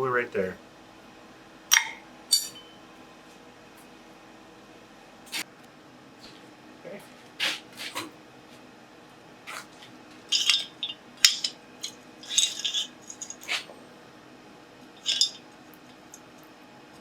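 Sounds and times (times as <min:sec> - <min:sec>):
metal tools clinking: 0:01.7 - 0:02.8, 0:10.3 - 0:13.7, 0:15.0 - 0:15.4.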